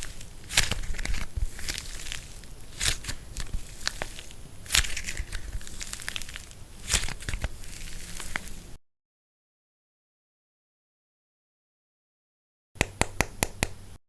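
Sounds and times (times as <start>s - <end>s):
plaster cracking loudly: 0.0s - 8.6s
dry plaster crackling: 0.0s - 8.8s.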